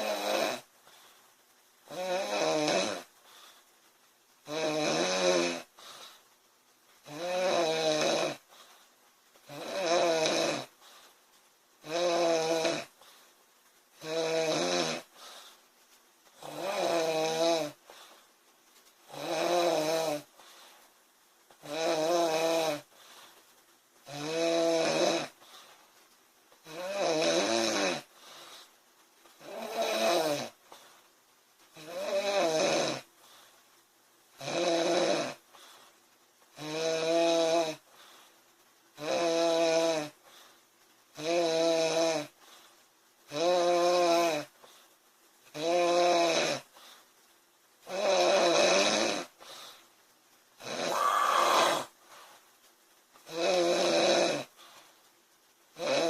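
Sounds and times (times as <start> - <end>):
woman snoring: 0.0 - 0.7, 1.9 - 3.1, 4.4 - 5.7, 7.0 - 8.5, 9.5 - 10.7, 11.8 - 13.0, 14.0 - 15.2, 16.4 - 17.9, 19.1 - 20.4, 21.6 - 22.9, 24.0 - 25.4, 26.6 - 28.1, 29.4 - 30.6, 31.8 - 33.1, 34.4 - 35.4, 36.6 - 37.9, 39.0 - 40.2, 41.2 - 42.4, 43.3 - 44.5, 45.5 - 46.7, 47.8 - 49.4, 50.6 - 52.0, 53.3 - 54.5, 55.8 - 56.0.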